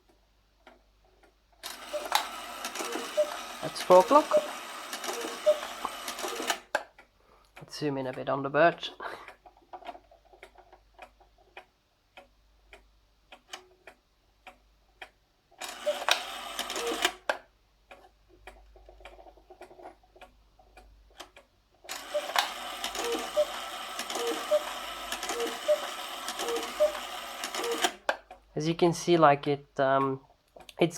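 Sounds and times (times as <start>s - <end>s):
clock ticking: 0.0s - 29.2s, 29.8s - 30.9s
clock mechanism whirring: 1.6s - 6.8s, 15.6s - 17.4s, 20.6s - 28.2s
cuckoo call: 1.9s - 6.6s, 15.8s - 17.1s, 22.0s - 28.0s.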